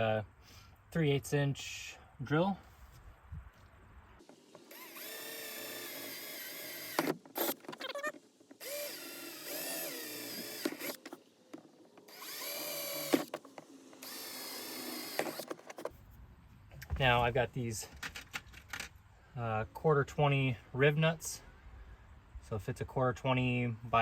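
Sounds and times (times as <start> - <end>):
power drill boring: 4.2 - 11.2, 12.0 - 15.8.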